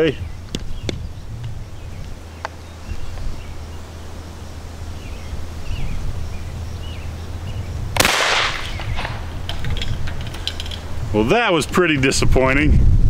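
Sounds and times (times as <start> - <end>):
shotgun shot with echo: 8.0 - 9.2.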